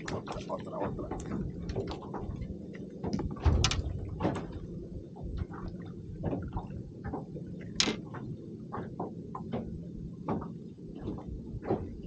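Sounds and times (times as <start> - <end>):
fishing gear knocking and clattering: 3.1 - 4.6.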